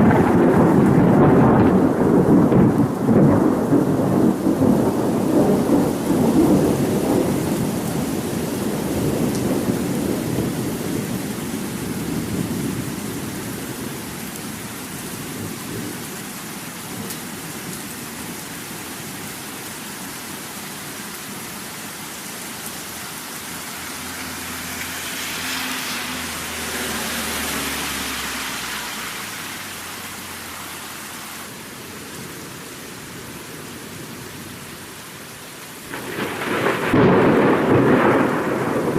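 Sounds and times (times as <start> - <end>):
thunder rumbling: 0.0 - 14.5, 35.8 - 38.9
steady rain: 0.0 - 38.9.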